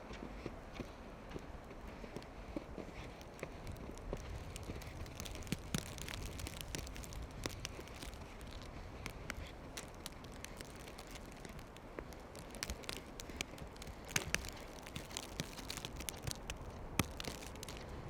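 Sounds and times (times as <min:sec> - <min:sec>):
footsteps crunching in snow: 0:00.1 - 0:18.0.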